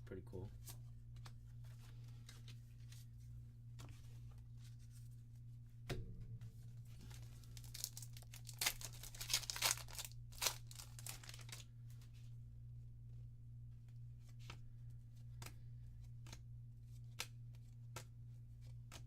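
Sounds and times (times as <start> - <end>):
low electrical hum: 0.0 - 19.0
wrapper ripping and crackling: 7.1 - 11.7.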